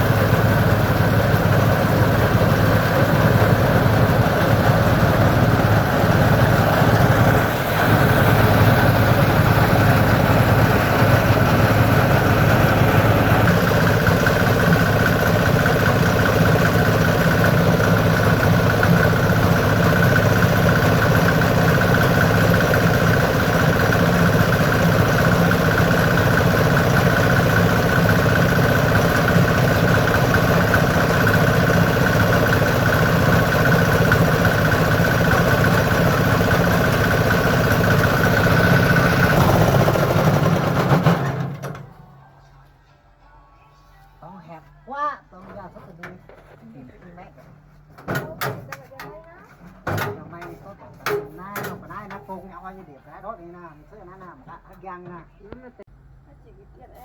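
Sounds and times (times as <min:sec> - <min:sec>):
engine droning: 0:00.0 - 0:42.7.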